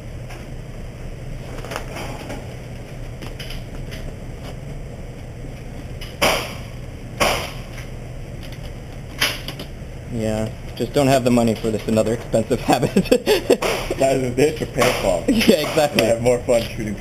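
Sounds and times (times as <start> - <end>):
steady low hum: 0.0 - 17.0
sharp cracks: 6.1 - 7.8.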